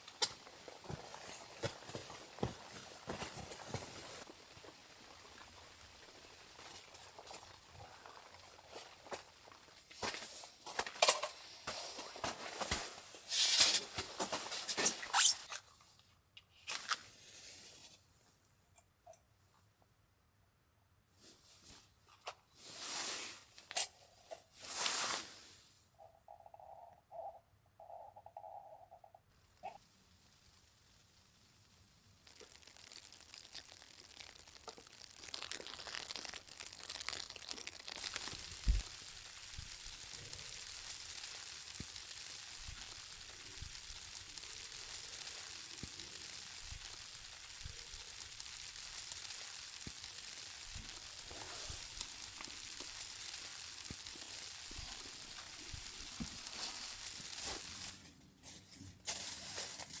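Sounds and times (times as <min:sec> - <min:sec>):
steak sizzling: 0:00.0 - 0:15.4, 0:29.5 - 0:58.1.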